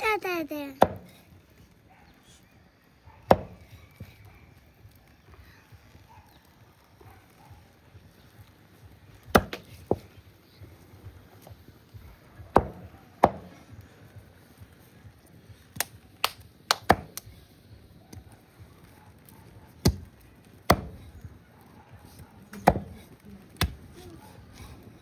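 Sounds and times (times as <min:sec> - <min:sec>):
heavy blade chopping on board: 0:20.7 - 0:21.0, 0:22.6 - 0:22.9.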